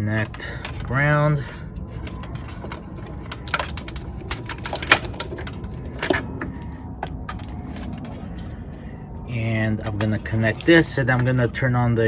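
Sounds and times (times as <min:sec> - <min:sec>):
clicks and knocks of test leads: 0:02.0 - 0:08.1.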